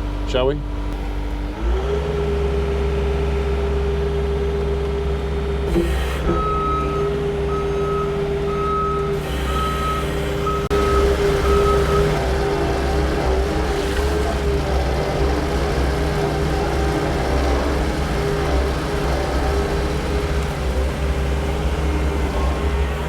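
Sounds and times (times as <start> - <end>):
diesel engine running: 0.0 - 23.0
reversing alarm beeping: 6.2 - 12.2.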